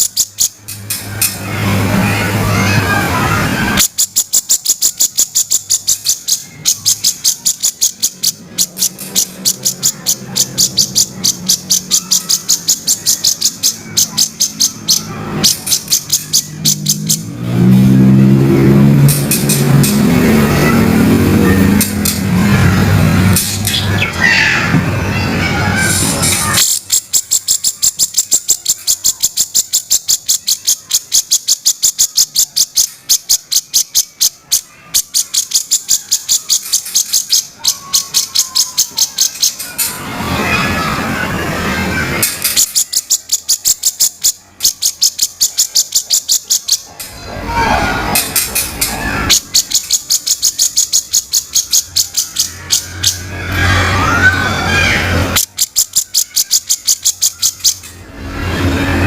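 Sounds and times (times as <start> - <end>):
bulbul harsh rasping call: 2.5 - 17.3, 25.6 - 40.8, 42.2 - 58.0.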